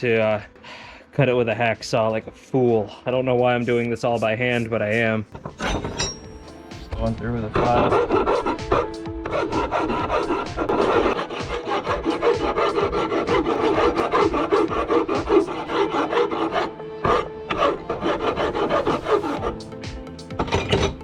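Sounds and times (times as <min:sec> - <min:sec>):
file rasping on metal: 0:05.3 - 0:21.0.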